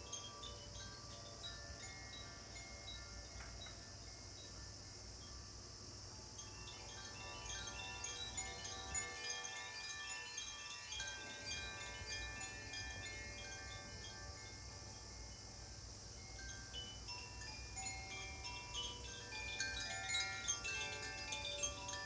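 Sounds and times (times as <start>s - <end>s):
metal chimes ringing: 6.6s - 15.4s, 16.1s - 22.0s.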